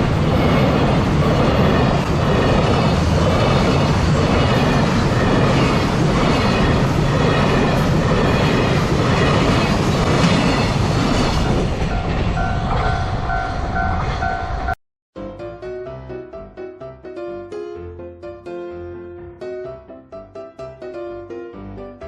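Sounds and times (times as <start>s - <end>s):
crossing warning bell dinging: 11.4s - 14.8s.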